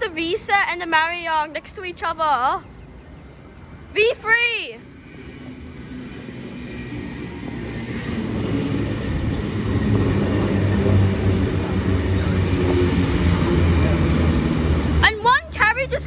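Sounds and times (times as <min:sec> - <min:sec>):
electric train wheels rumbling: 0:03.2 - 0:16.0.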